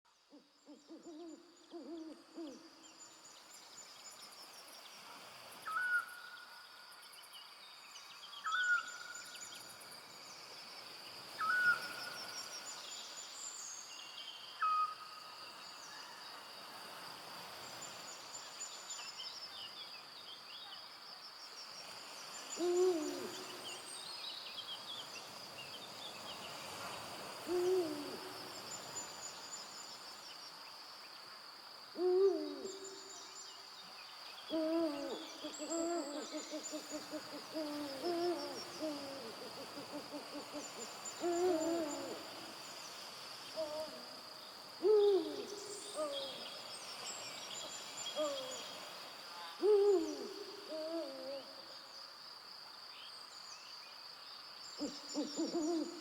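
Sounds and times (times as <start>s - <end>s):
owl hooting: 22.6s - 23.6s, 27.5s - 28.4s, 32.0s - 33.0s, 34.5s - 42.4s, 44.8s - 46.4s, 49.6s - 51.5s, 54.8s - 56.0s.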